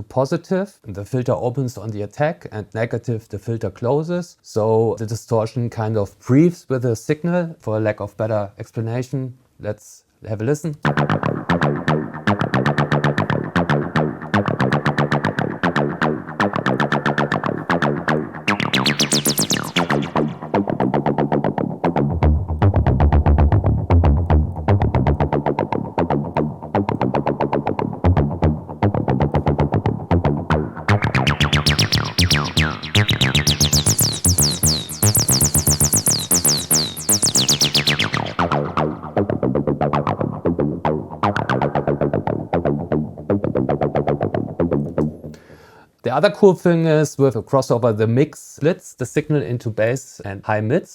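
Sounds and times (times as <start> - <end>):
distorted acid synth line: 10.8 - 22.6, 25.2 - 42.9.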